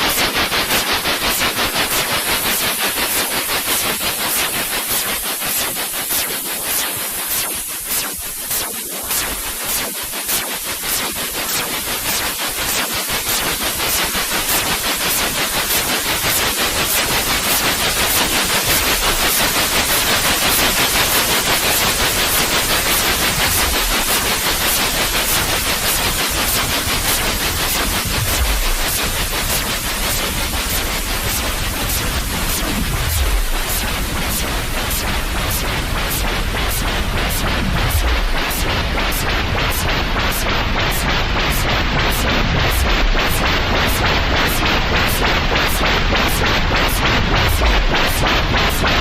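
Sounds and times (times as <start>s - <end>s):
loud white noise hiss: 0.0s - 49.0s
low rumbles: 32.3s - 38.5s.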